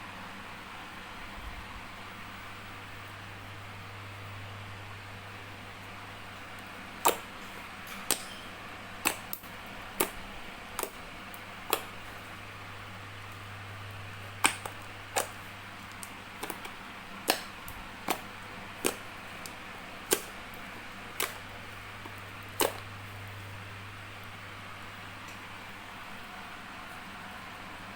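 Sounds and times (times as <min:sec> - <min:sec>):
slime popping clicks: 0:07.0 - 0:07.3, 0:09.0 - 0:10.2, 0:10.8 - 0:11.0, 0:11.7 - 0:12.0, 0:14.4 - 0:20.4, 0:21.1 - 0:21.4, 0:22.0 - 0:22.8.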